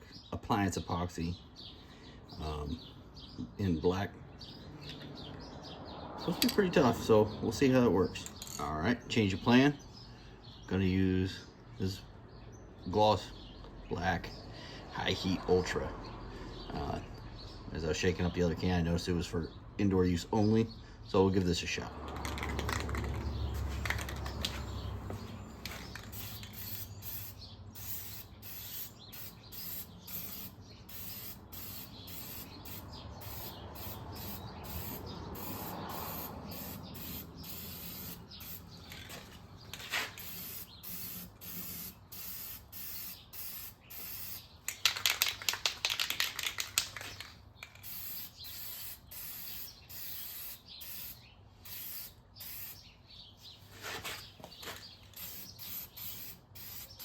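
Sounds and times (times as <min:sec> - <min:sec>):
spray can rattling: 0:22.1 - 0:24.8, 0:25.6 - 0:52.8, 0:53.8 - 0:57.0
spray paint can hissing: 0:22.1 - 0:24.8, 0:25.6 - 0:52.8, 0:53.8 - 0:57.0.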